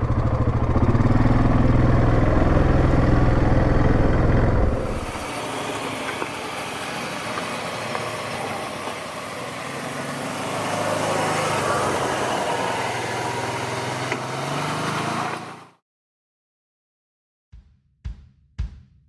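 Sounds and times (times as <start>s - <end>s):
atv engine idling: 0.0s - 14.2s.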